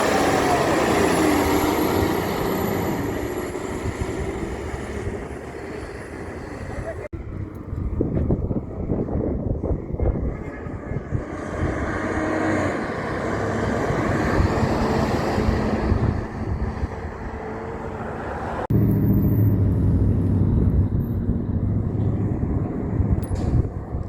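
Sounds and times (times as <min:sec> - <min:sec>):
low diesel engine drone: 0:00.0 - 0:24.0
heavy truck driving past: 0:11.0 - 0:24.0.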